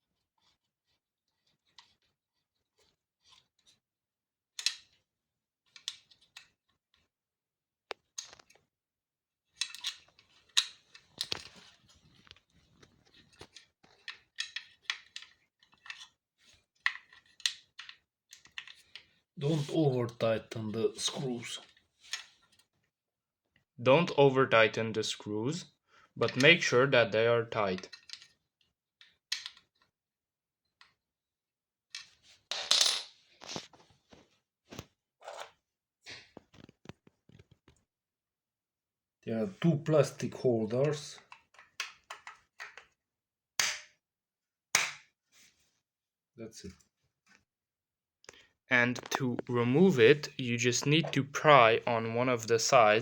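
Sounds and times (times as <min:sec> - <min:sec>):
plastic parts clicking and scraping: 0:00.4 - 0:03.8, 0:04.6 - 0:05.0, 0:05.7 - 0:06.8, 0:07.9 - 0:08.7, 0:09.5 - 0:19.7, 0:21.1 - 0:22.7, 0:27.7 - 0:28.4, 0:29.0 - 0:29.9, 0:34.7 - 0:37.8, 0:40.8 - 0:43.0, 0:48.3 - 0:49.9.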